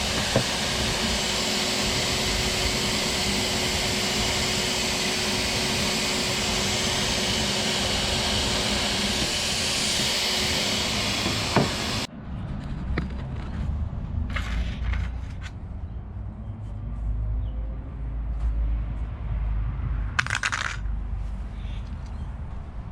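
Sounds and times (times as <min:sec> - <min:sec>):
shop vac blowing: 0:00.0 - 0:12.1.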